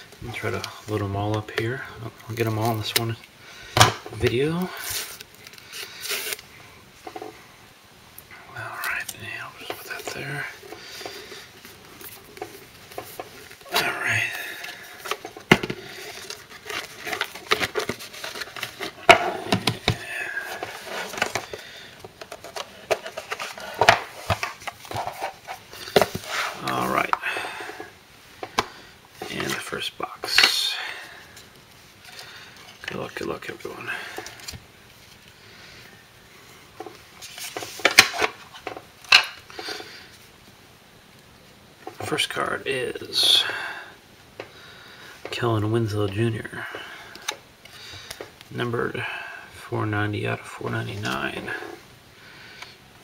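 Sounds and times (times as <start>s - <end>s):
packaging rustling: 8.8s - 29.8s.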